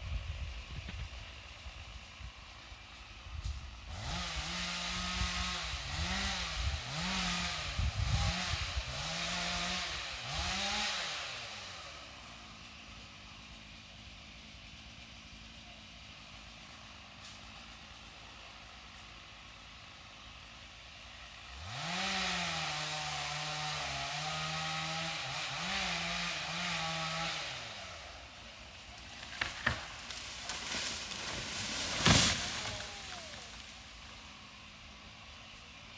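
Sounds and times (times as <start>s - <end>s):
chainsaw idling and revving: 0.0s - 35.9s
sharp cracks: 29.0s - 34.0s.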